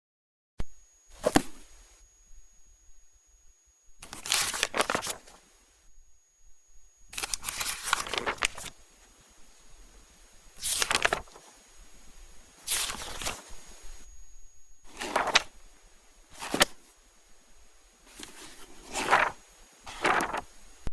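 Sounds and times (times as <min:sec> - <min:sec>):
book pages turning: 0:01.2 - 0:01.7, 0:04.0 - 0:05.4, 0:07.2 - 0:08.8, 0:10.6 - 0:11.5, 0:12.7 - 0:13.6, 0:14.8 - 0:15.7, 0:16.3 - 0:16.9, 0:18.1 - 0:20.6.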